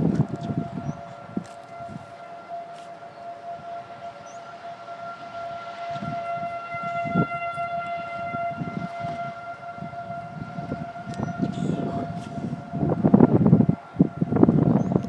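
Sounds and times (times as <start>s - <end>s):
warning siren steady tone: 0.0s - 15.0s
wind rumble on microphone: 0.0s - 15.0s.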